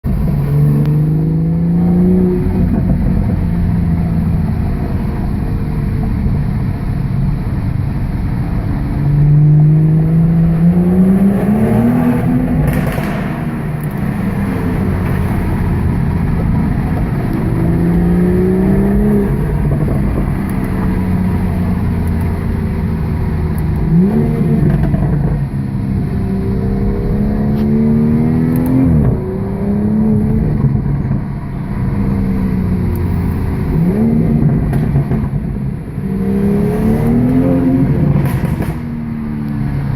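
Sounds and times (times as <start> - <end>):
car engine revving: 0.1 - 39.9
exhaust pops and crackles: 12.5 - 14.2, 34.3 - 35.6, 38.0 - 38.9.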